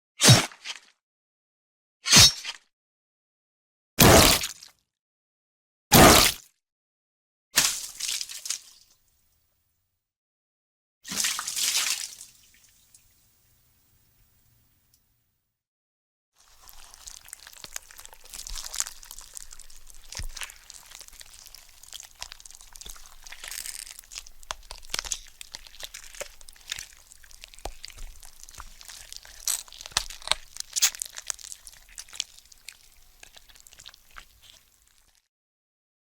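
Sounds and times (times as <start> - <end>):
wet crunching and tearing: 4.0 - 4.7, 6.0 - 6.4, 16.4 - 35.2.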